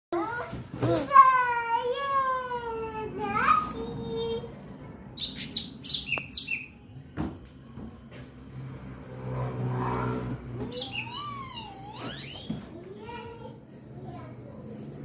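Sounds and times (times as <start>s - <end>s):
bird chirping and whistling: 5.2s - 6.8s, 10.7s - 12.6s.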